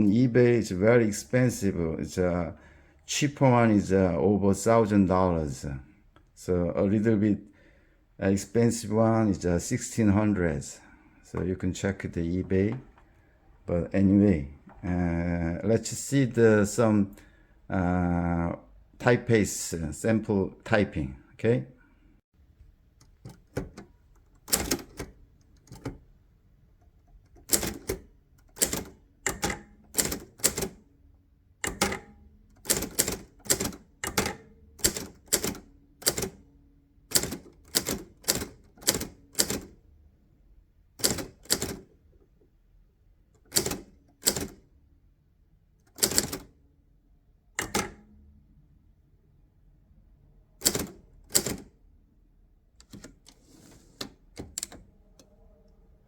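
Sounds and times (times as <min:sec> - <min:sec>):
manual typewriter keystrokes: 0:22.9 - 0:26.0, 0:26.8 - 0:30.8, 0:31.6 - 0:36.5, 0:37.1 - 0:39.8, 0:41.0 - 0:41.9, 0:43.4 - 0:44.7, 0:45.8 - 0:46.6, 0:47.6 - 0:48.1, 0:50.6 - 0:51.8, 0:52.8 - 0:55.3.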